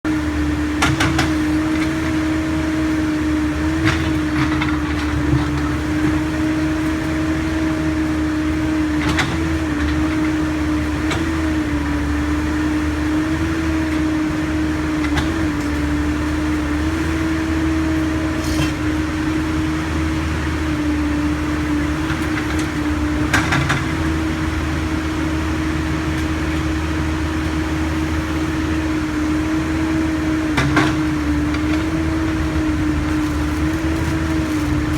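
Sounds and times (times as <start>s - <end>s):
diesel engine running: 0.1s - 34.9s.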